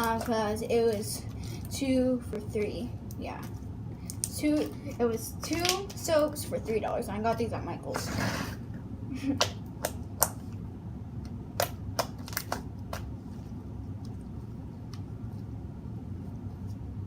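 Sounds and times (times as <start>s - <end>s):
steady low hum: 0.0s - 17.0s.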